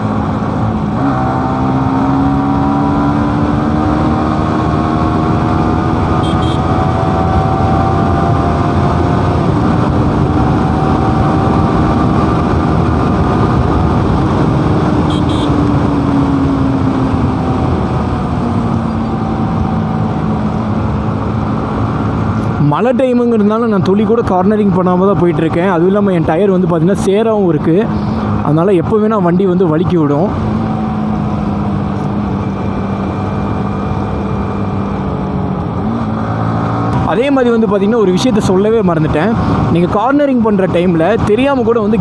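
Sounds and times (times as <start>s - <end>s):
motorcycle engine running: 0.0s - 22.6s
wind and road noise rushing: 0.0s - 42.0s.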